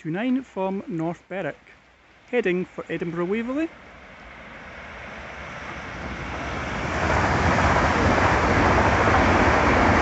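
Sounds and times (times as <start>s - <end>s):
train wheels rumbling on rails: 2.9s - 10.0s.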